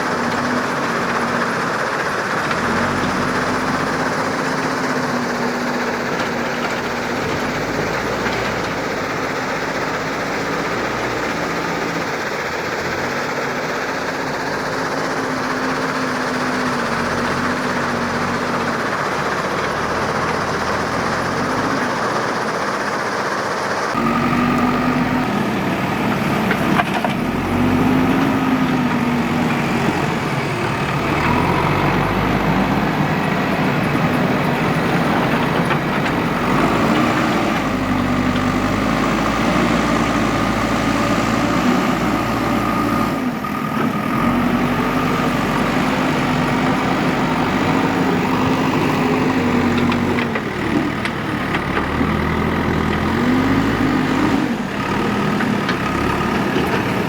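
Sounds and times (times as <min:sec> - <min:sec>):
diesel engine revving: 0:00.0 - 0:57.0.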